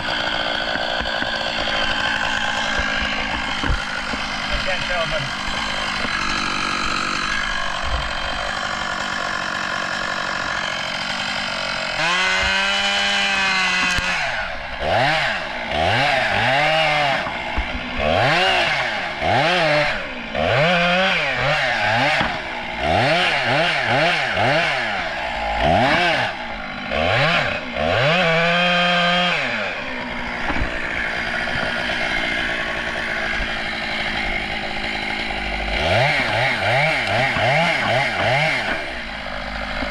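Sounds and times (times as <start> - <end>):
chainsaw running at high revs: 0.0 - 39.9.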